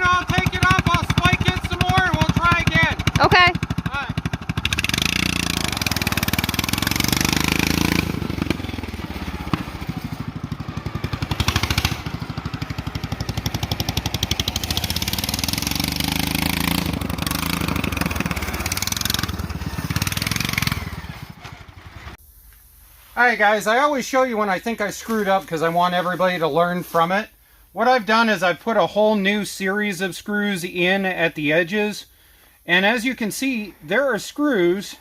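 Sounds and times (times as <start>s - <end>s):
small engine revving: 0.0s - 22.2s.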